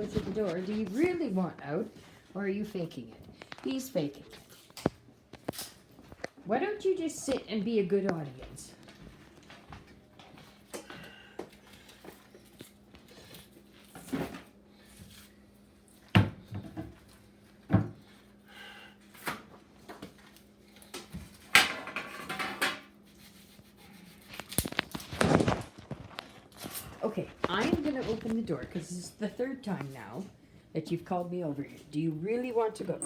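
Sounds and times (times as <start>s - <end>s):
faint steady hum: 0.0s - 33.0s
objects knocking and clunking: 16.2s - 17.1s, 21.0s - 22.9s.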